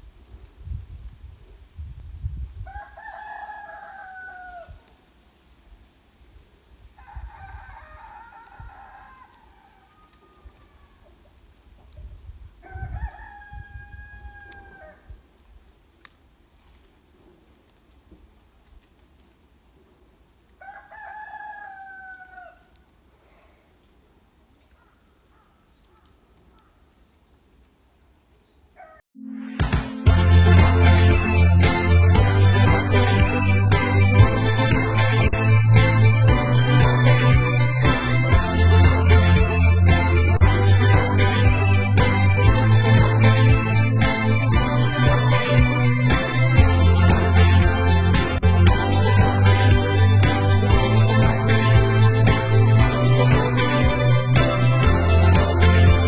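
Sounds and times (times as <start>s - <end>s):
rooster crowing: 2.7s - 5.0s, 7.0s - 11.2s, 12.6s - 15.2s, 20.6s - 22.8s, 28.8s - 29.0s.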